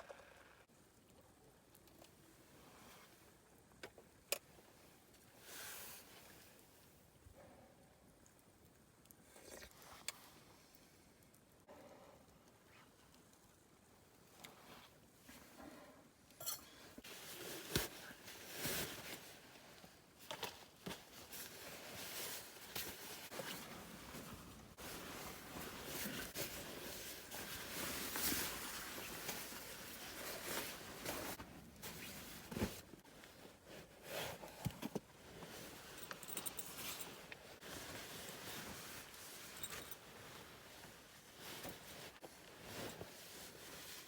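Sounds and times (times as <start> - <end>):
rustling of gear or clothing: 16.9 - 44.0.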